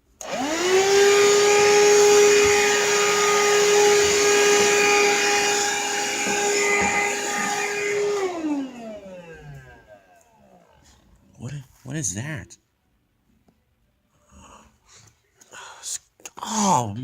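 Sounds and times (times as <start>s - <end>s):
vacuum cleaner whining: 0.0s - 11.2s.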